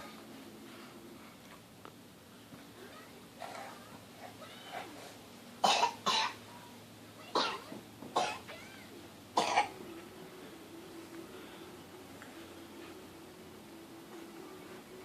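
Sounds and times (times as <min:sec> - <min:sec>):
person coughing: 0:09.4 - 0:09.8.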